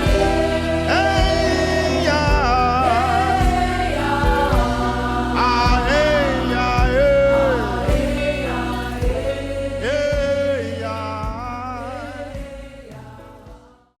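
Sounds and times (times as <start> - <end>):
sustained low accompaniment: 0.0 - 13.7
gospel singing: 0.0 - 14.0.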